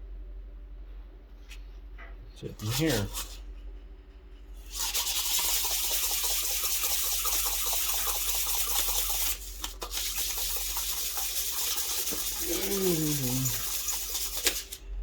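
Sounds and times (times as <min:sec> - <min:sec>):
low steady hum: 0:00.0 - 0:04.7
spraying hiss: 0:04.7 - 0:14.7.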